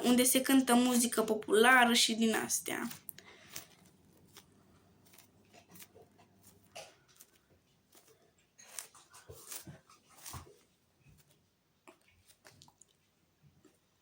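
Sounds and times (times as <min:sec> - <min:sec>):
small objects clicking and rustling: 0:02.3 - 0:11.4.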